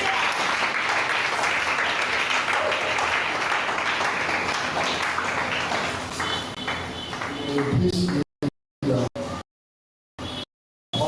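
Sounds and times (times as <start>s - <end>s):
crowd applauding: 0.0s - 8.2s.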